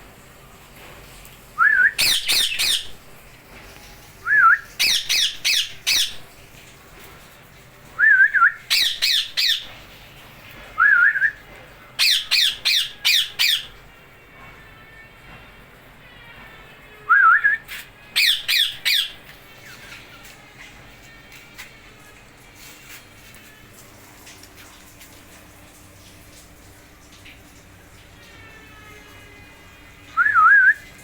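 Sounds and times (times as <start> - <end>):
parrot warbling and screeching: 2.0 - 3.0, 18.2 - 19.9.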